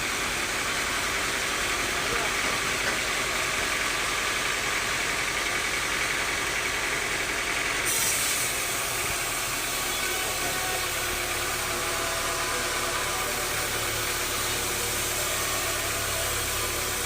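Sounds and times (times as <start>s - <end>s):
sawmill machinery drone: 0.0s - 17.0s
brief hiss: 7.9s - 8.7s.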